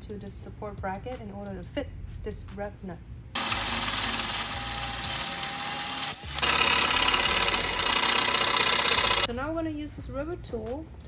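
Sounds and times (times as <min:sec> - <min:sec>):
power drill drilling into metal: 0:03.4 - 0:09.3.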